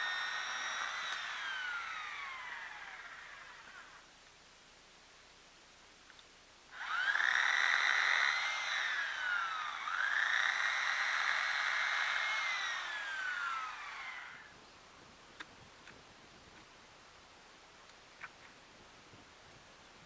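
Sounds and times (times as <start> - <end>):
chainsaw revving: 0.0 - 4.0, 6.8 - 14.5.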